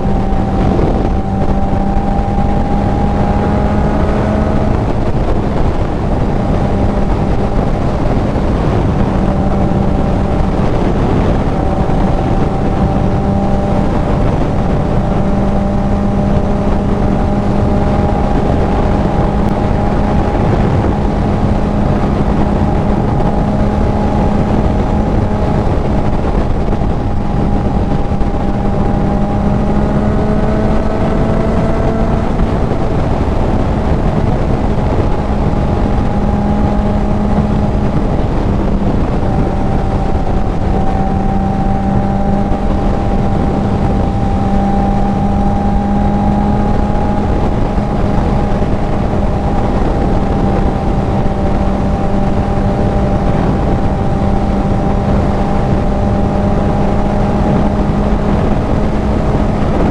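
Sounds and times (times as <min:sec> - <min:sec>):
motorcycle engine drone: 0:00.0 - 0:59.9
wind rush on microphone: 0:00.0 - 0:59.9.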